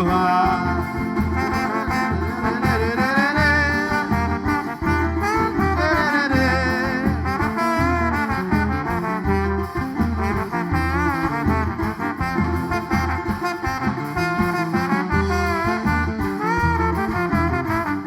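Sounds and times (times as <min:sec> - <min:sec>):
brass horns melody: 0:00.0 - 0:18.0
pulsing bass line: 0:00.0 - 0:18.0.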